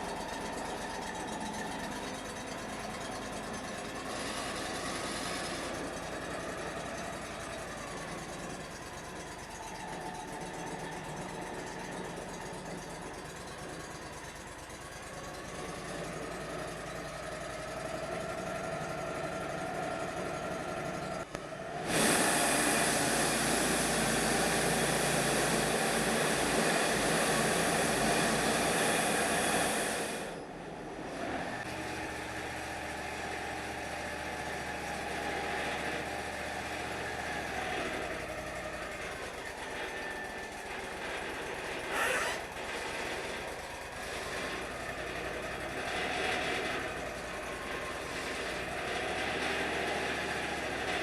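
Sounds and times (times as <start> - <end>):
sawmill engine running: 0.0 - 51.0
band saw blade cutting log: 41.7 - 43.4.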